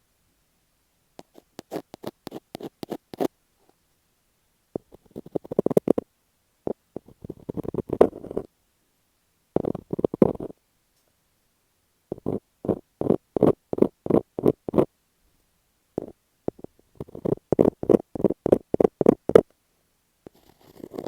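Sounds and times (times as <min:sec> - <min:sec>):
fingers touching tape on microphone: 0:01.2 - 0:03.3, 0:04.8 - 0:06.0, 0:06.7 - 0:08.5, 0:09.6 - 0:10.5, 0:12.1 - 0:14.9, 0:16.0 - 0:19.5, 0:20.3 - 0:21.0.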